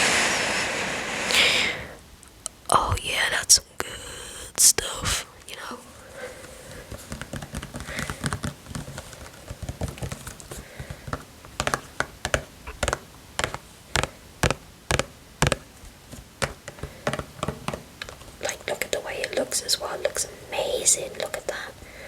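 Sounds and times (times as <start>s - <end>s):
fingers tapping on plastic bottle: 6.8s - 15.7s, 16.4s - 18.2s.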